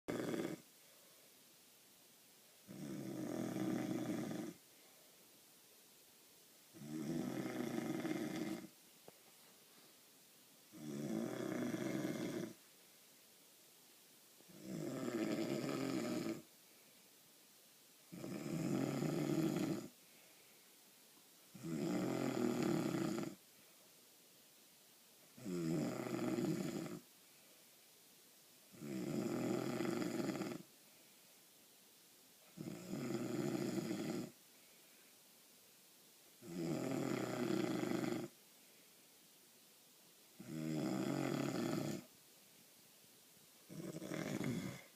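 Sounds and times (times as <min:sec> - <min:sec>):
person snoring: 0:00.1 - 0:00.7, 0:02.7 - 0:04.6, 0:06.7 - 0:08.7, 0:10.7 - 0:12.6, 0:14.5 - 0:16.5, 0:18.1 - 0:20.0, 0:21.5 - 0:23.4, 0:25.4 - 0:27.0, 0:28.7 - 0:30.7, 0:32.6 - 0:34.4, 0:36.4 - 0:38.4, 0:40.4 - 0:42.1, 0:43.7 - 0:44.9.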